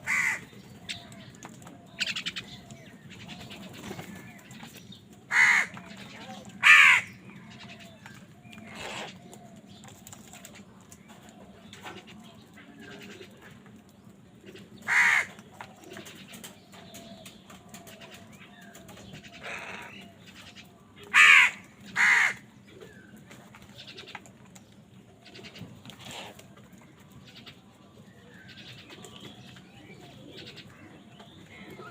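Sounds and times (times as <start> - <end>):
crows cawing: 0.0 - 1.0, 5.3 - 5.8, 6.6 - 7.8, 14.8 - 15.4, 19.2 - 20.1, 21.0 - 22.5.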